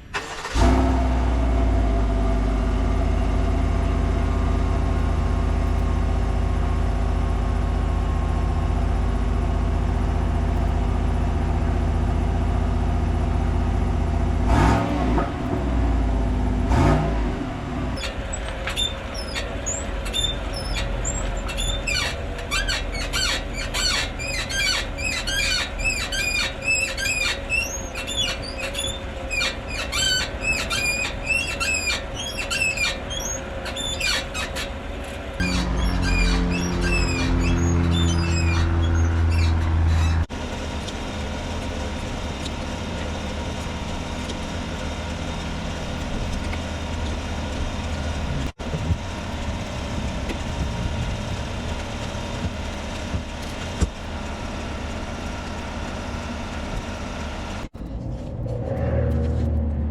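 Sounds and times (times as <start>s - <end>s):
engine revs: 0.0s - 59.9s
truck engine starting and idling: 0.0s - 59.9s
high-pitched squeaks: 17.9s - 41.0s.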